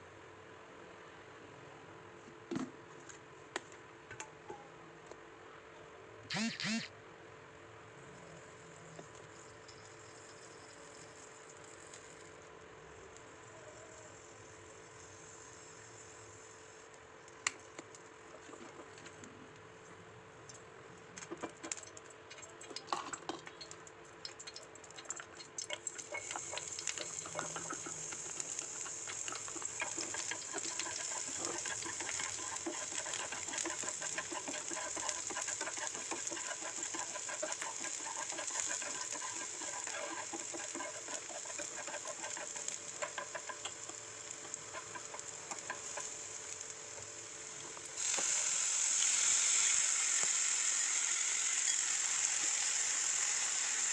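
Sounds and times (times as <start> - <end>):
food sizzling in a pan: 25.8 - 53.9.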